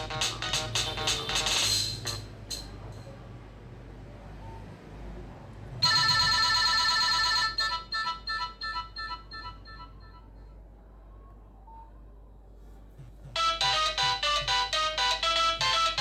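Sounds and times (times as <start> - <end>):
phone ringtone: 0.0 - 2.4, 5.8 - 10.3, 13.4 - 16.0.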